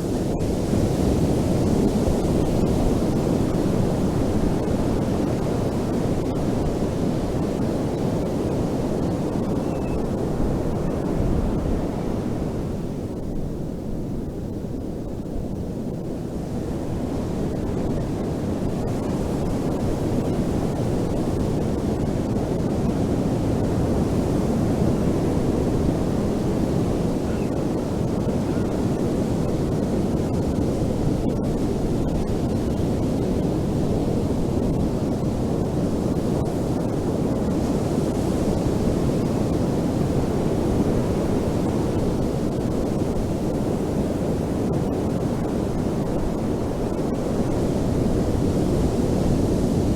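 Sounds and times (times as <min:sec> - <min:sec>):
ocean surf washing onto beach: 0:16.2 - 0:49.9.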